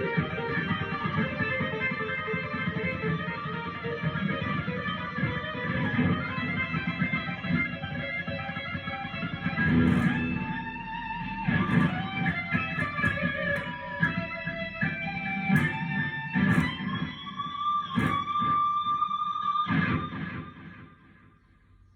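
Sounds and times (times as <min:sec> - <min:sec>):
guitar plucked and strummed: 0:00.0 - 0:21.4.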